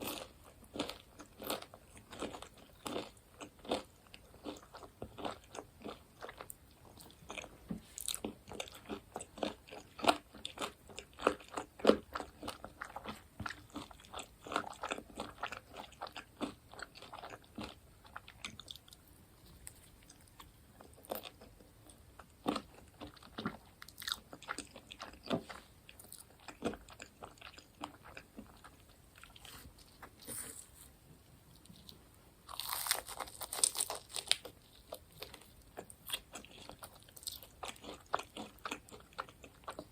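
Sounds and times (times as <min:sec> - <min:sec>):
crunchy chewing of fried food: 0:00.0 - 0:39.9.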